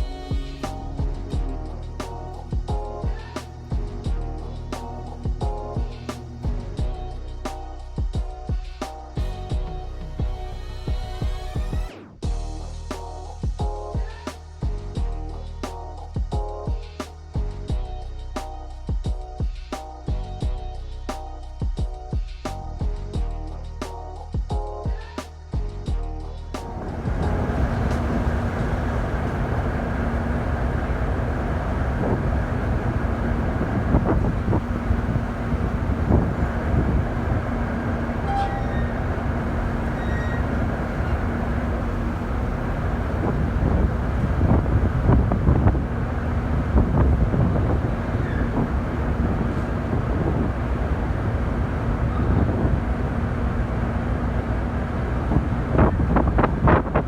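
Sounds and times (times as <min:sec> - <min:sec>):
vehicle rumble: 0:00.0 - 0:16.2, 0:25.9 - 0:57.0
faint steady hum: 0:26.6 - 0:57.0.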